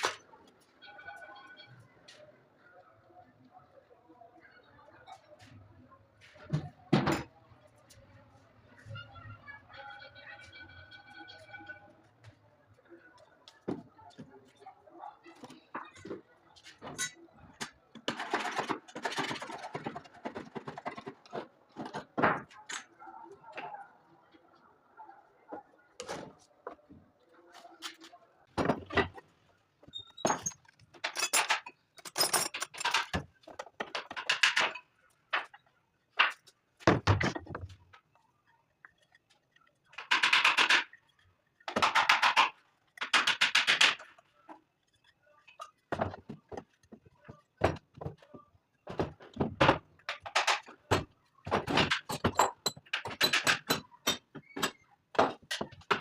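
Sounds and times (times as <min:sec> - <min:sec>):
wood knocking and clattering: 0:28.6 - 0:29.3, 0:30.3 - 0:35.6, 0:36.2 - 0:37.9, 0:45.8 - 0:56.0.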